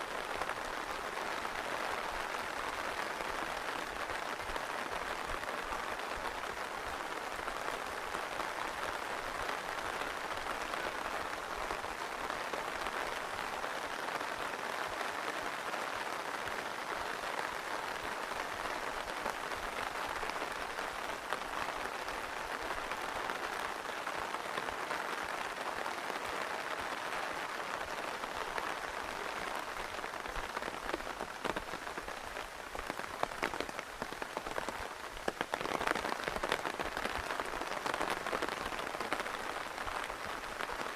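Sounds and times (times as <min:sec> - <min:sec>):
rain hissing: 0:15.1 - 0:40.9.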